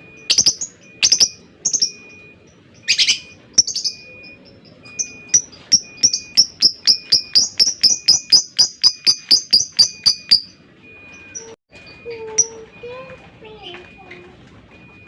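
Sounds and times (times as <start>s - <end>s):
bird chirping: 0.1s - 11.5s.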